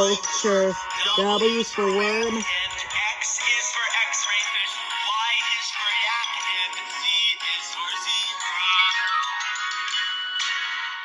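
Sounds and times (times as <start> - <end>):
synthetic-sounding sung voice: 0.0 - 9.4
children's song music: 0.0 - 11.0.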